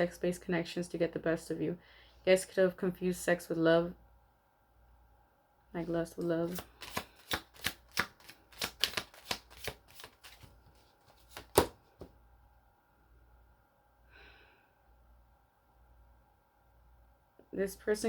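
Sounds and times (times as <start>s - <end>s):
cards shuffled by hand: 6.4s - 12.1s.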